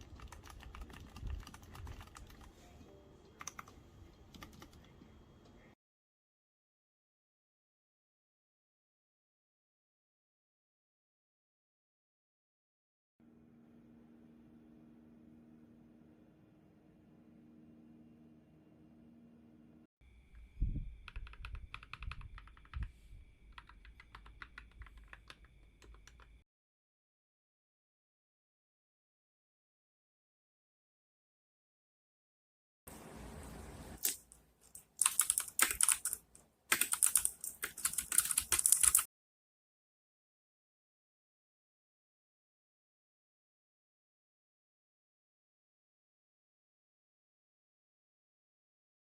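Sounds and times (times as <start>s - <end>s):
mechanical keyboard key clicks: 35.0s - 39.0s.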